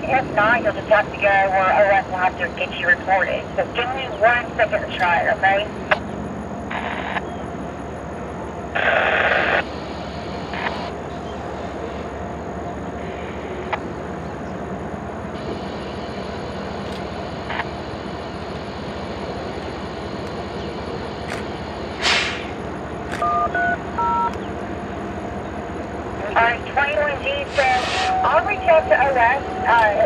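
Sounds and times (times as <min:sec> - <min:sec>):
radio squelch static: 0:00.0 - 0:06.0, 0:20.2 - 0:24.6, 0:26.2 - 0:30.0
radio background hiss: 0:00.0 - 0:12.1, 0:15.3 - 0:24.6, 0:26.2 - 0:30.0
faint clicks: 0:16.8 - 0:17.7, 0:19.6 - 0:24.6.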